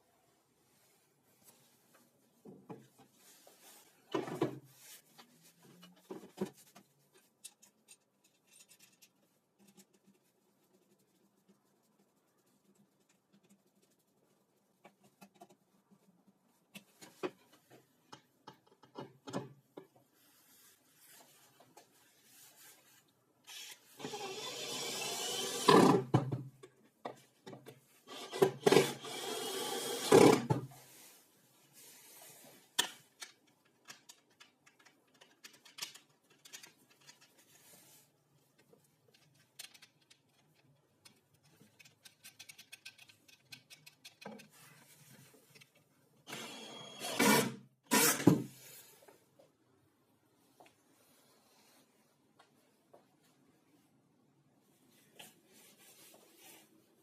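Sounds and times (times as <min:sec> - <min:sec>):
light clicks and knocks of parts: 0:32.7 - 0:37.7, 0:38.3 - 0:46.0.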